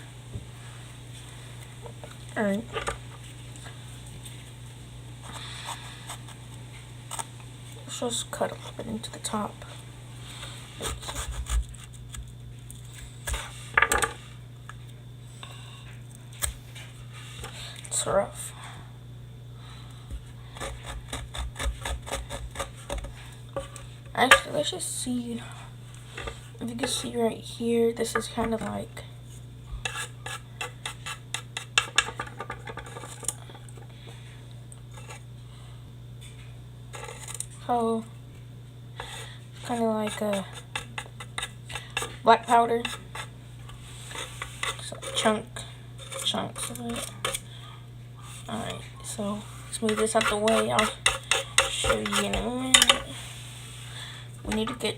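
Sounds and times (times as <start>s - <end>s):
low steady hum: 0.0s - 54.9s
knife scraping cardboard: 29.8s - 31.8s, 49.8s - 52.4s.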